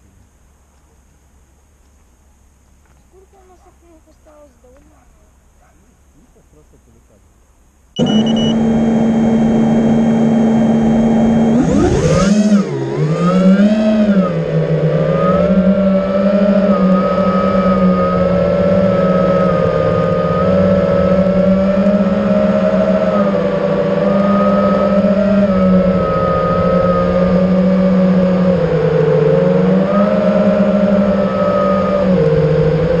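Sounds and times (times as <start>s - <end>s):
drone motors whining: 8.0s - 33.0s.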